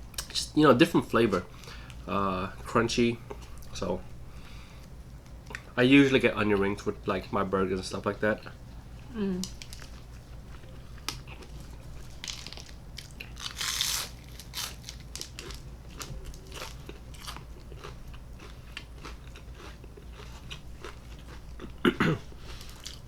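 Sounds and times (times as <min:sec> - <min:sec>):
chewing crunchy food: 0:04.8 - 0:05.8, 0:08.6 - 0:23.0.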